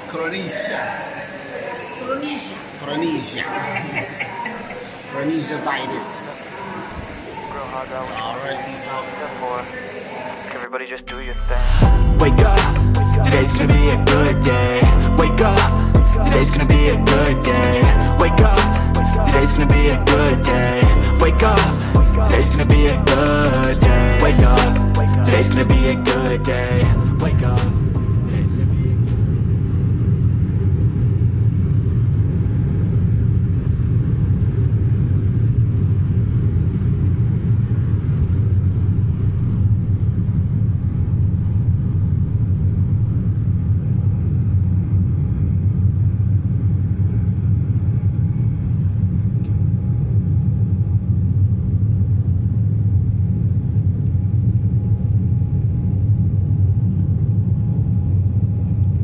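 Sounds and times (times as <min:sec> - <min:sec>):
vehicle low rumble: 0:11.1 - 0:45.3.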